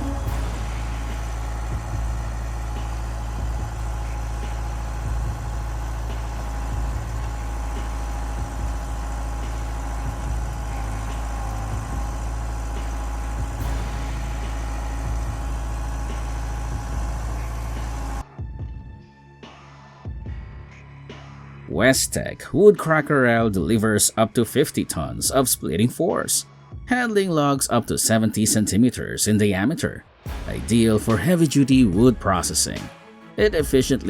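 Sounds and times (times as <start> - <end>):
heavy diesel engine running: 0.0 - 18.2, 30.3 - 32.8.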